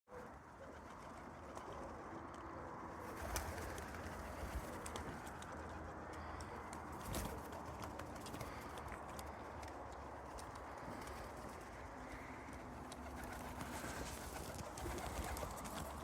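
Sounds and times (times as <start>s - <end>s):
pigeons cooing: 10.4s - 16.0s.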